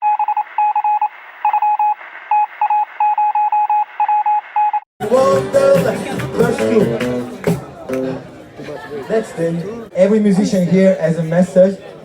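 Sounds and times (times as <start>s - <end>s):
thin electronic beeping: 0.0s - 4.8s
live venue voices and music: 5.0s - 12.0s.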